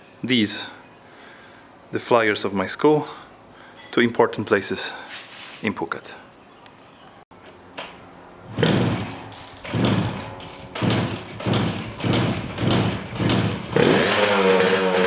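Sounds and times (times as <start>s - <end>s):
heavy thumps: 8.5s - 14.8s
motorbike engine starting: 8.5s - 15.0s.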